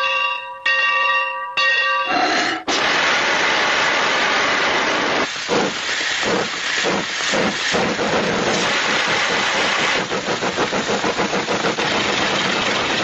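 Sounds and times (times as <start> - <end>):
locomotive bell ringing: 0.0 - 2.3
loud steam hiss: 2.6 - 13.0
steam locomotive chuffing: 2.7 - 13.0.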